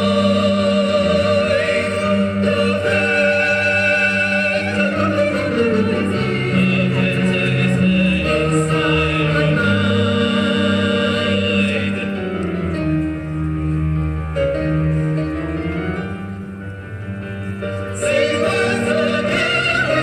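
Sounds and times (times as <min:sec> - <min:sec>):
operatic singing with vibrato: 0:00.0 - 0:13.4, 0:17.8 - 0:20.0
orchestral accompaniment: 0:00.0 - 0:20.0.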